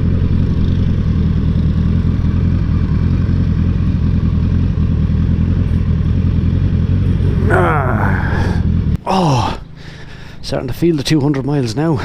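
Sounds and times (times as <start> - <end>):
motorcycle engine running: 0.0 - 9.5.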